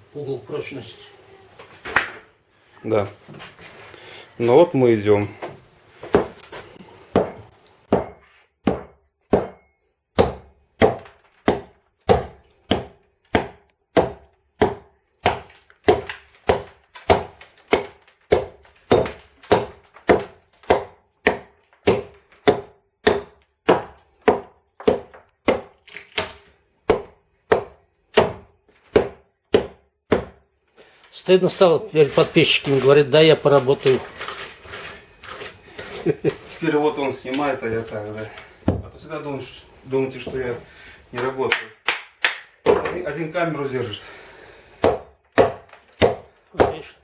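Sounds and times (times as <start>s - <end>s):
hammering on wooden floor boards: 7.1s - 25.8s, 26.8s - 30.5s, 41.9s - 43.0s, 44.8s - 47.0s.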